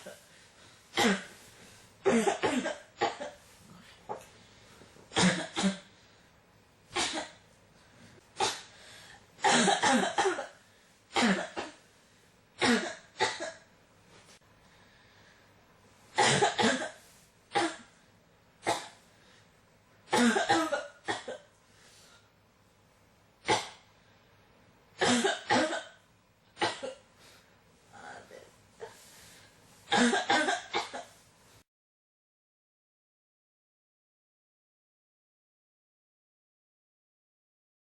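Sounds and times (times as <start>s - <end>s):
person coughing: 0.0s - 0.3s, 1.0s - 1.4s, 2.0s - 3.5s, 5.1s - 5.9s, 7.0s - 7.4s, 8.4s - 8.8s, 9.4s - 11.8s, 12.6s - 13.6s, 16.2s - 17.9s, 20.1s - 21.5s, 25.0s - 26.0s, 26.6s - 27.1s, 29.9s - 31.2s.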